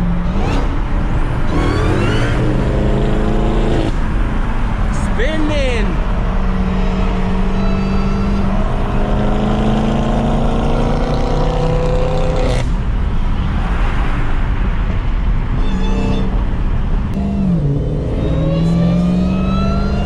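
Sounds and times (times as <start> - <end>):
road and wind noise: 0.0 - 20.0
car engine accelerating: 6.0 - 13.1, 14.6 - 20.0.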